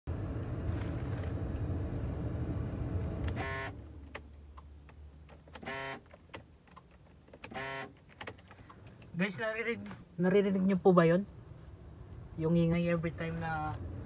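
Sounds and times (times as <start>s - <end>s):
electric buzz of door lock: 3.2s - 3.7s, 5.6s - 6.0s, 7.5s - 7.9s.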